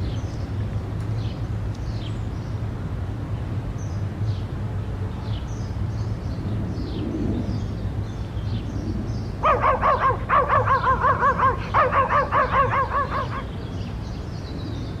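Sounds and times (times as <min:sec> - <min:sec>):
steady low rumble: 0:00.0 - 0:15.0
animal honking calls: 0:09.4 - 0:13.5.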